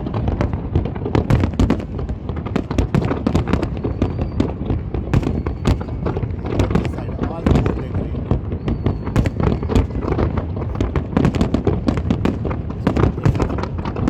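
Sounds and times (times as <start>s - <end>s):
fireworks bangs and crackles: 0.0s - 14.0s
low rumble of shell bursts: 0.8s - 14.0s.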